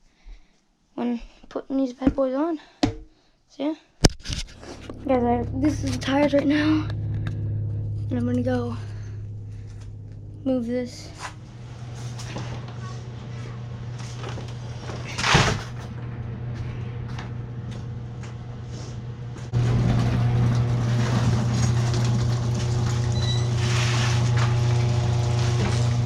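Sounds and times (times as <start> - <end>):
low engine hum: 4.5 - 26.0
loud clatter: 19.5 - 24.6.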